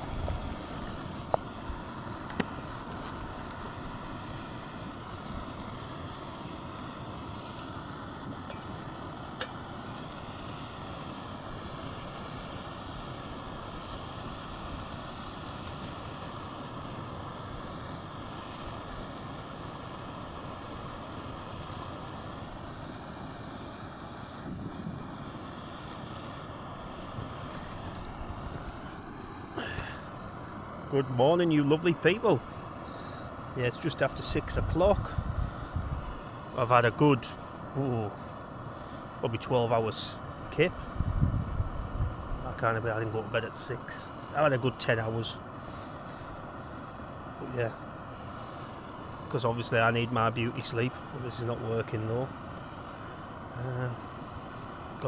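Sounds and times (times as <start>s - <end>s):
wind blowing against a tent: 0.0s - 4.0s, 34.4s - 36.4s, 40.8s - 42.5s.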